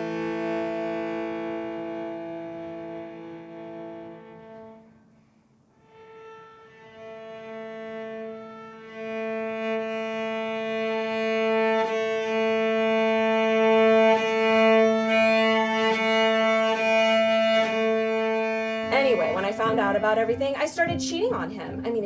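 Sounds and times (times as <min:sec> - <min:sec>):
bowed string sustained note: 0:12.6 - 0:22.0.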